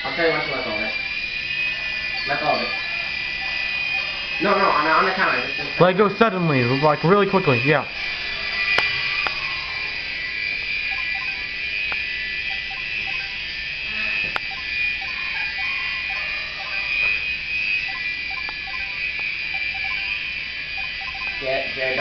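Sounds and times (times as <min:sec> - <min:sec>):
toy helicopter whining: 0:00.0 - 0:22.0
sharp ticks: 0:10.4 - 0:13.4, 0:14.2 - 0:15.2, 0:17.8 - 0:20.2, 0:20.8 - 0:21.6.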